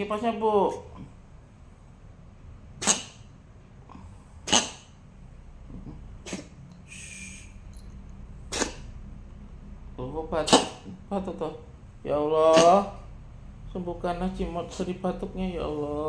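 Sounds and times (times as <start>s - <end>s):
cat coughing: 2.8s - 3.3s, 4.4s - 5.0s, 5.7s - 6.6s, 8.4s - 9.0s, 10.4s - 11.1s, 12.4s - 13.1s.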